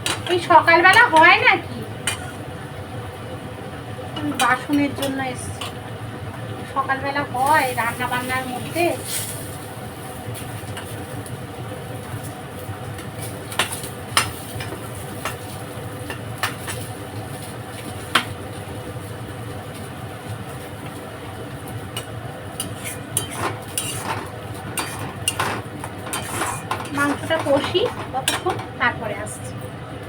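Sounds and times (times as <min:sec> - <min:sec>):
spatula clinking against pan: 0:22.0 - 0:28.8
metal spatula stirring meat: 0:22.6 - 0:28.7.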